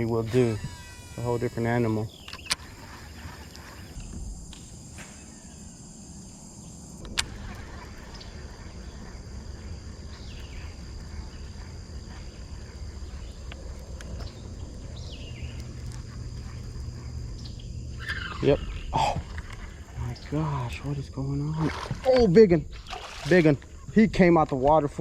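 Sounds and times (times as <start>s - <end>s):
insects droning: 0.0s - 25.0s
falling bird calls: 7.1s - 20.7s.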